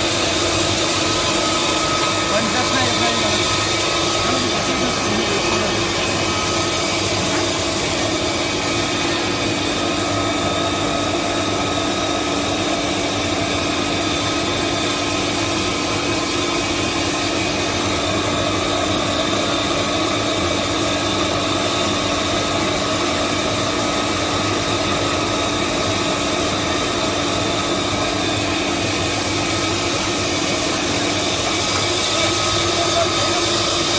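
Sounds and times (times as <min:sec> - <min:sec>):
mixer machine hum with whine: 0:00.0 - 0:33.9.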